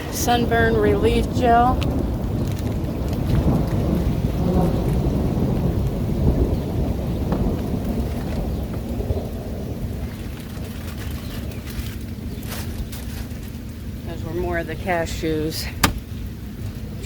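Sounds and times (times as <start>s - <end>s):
rolling thunder rumbling: 0.0s - 10.4s
rain falling: 0.0s - 17.0s.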